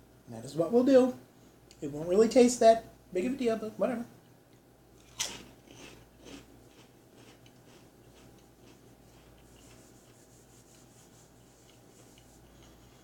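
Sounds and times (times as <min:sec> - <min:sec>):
crisps being crunched: 0:05.0 - 0:08.8.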